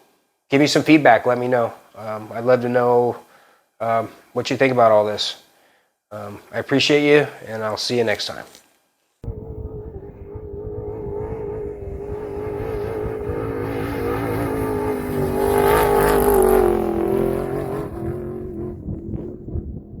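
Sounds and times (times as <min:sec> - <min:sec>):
vehicle engine revving: 0:09.2 - 0:20.0.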